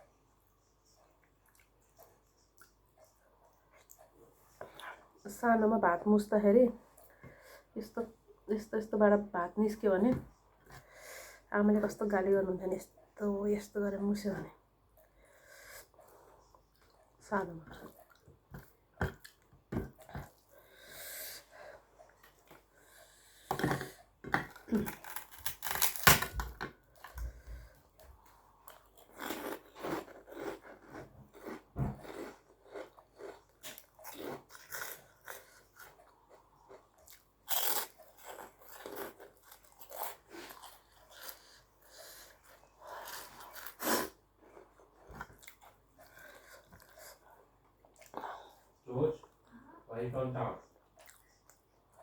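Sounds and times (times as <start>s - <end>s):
chewing and smacking: 0.8s - 5.1s, 16.5s - 20.6s, 44.4s - 48.6s, 50.8s - 52.0s.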